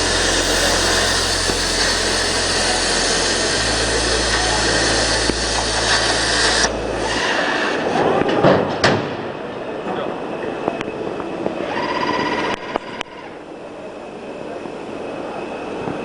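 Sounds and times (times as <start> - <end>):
plasma arc hissing: 0.0 - 7.4
low machine hum: 0.0 - 8.8.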